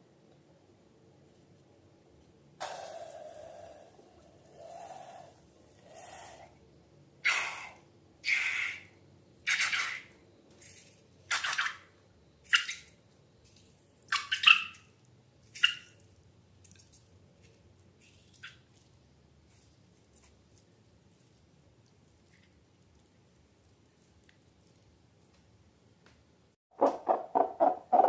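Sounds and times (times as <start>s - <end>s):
slime squelching and dripping: 12.5s - 25.6s.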